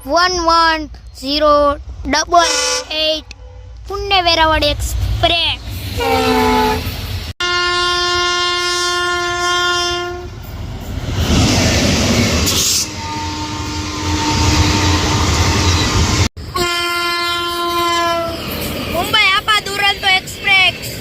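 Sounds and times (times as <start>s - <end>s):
passing train rumble and clatter: 0.0s - 21.0s
locomotive air horn: 2.4s - 3.8s, 6.0s - 10.3s, 12.7s - 18.4s.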